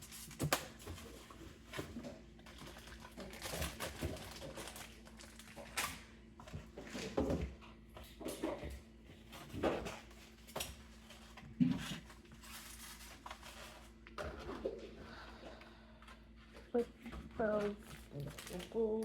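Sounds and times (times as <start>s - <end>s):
kitchen items knocking and clattering: 6.4s - 15.0s.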